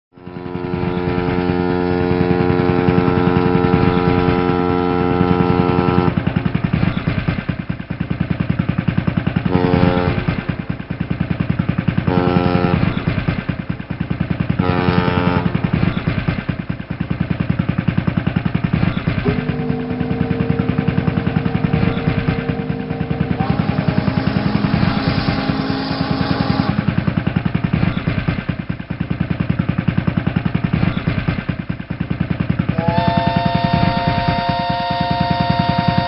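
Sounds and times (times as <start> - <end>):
motorboat engine running: 0.2 - 36.0
steady pitched tone: 18.5 - 28.4.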